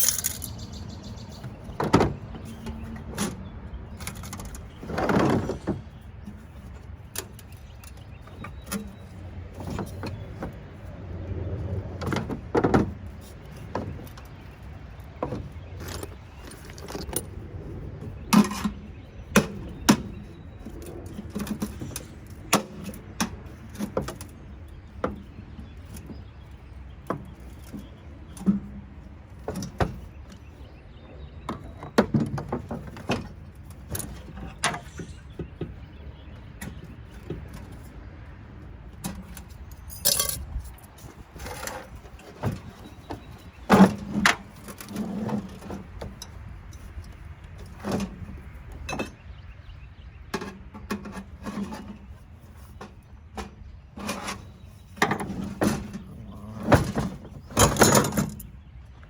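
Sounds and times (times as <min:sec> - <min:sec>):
metallic clinks of hand tools: 0:00.0 - 0:00.8, 0:39.8 - 0:40.4.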